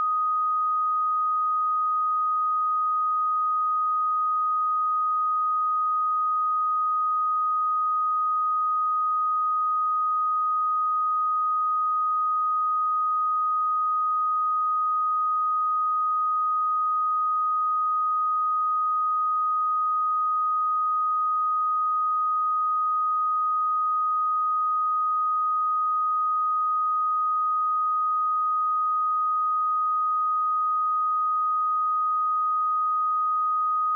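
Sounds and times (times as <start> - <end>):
sine wave test tone: 0.0 - 33.9.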